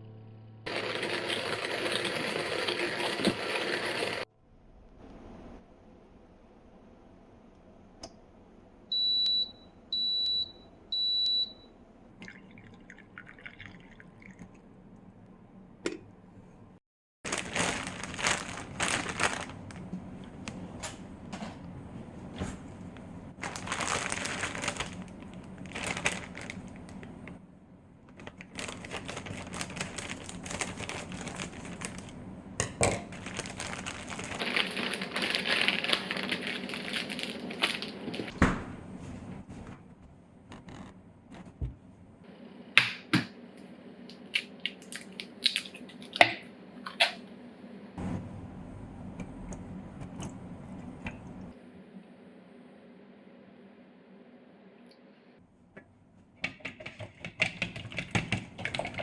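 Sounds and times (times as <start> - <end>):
appliance beeps: 8.9 - 11.8
liquid sounds: 12.1 - 14.8
crinkling and rustling: 17.3 - 21.6, 22.2 - 27.4, 28.0 - 32.2, 32.9 - 41.8.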